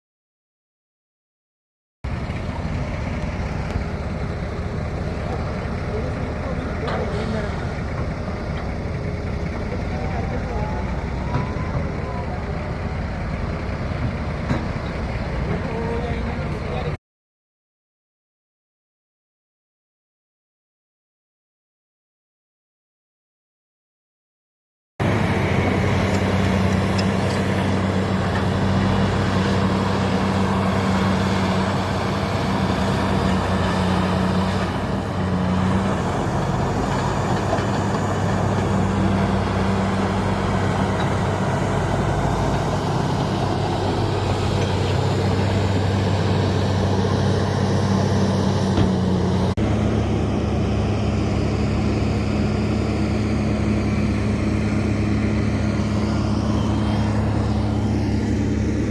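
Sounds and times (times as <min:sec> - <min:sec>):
diesel machinery engine drone: 0:02.0 - 0:17.0, 0:25.0 - 0:58.9.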